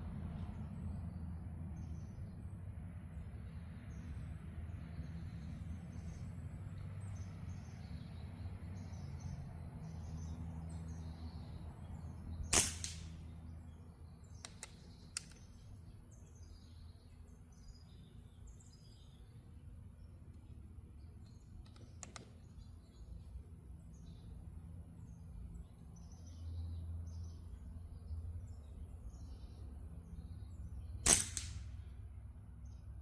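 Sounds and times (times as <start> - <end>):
low steady rumble: 0.0 - 33.0
airgun shot: 12.5 - 13.3, 31.0 - 31.8.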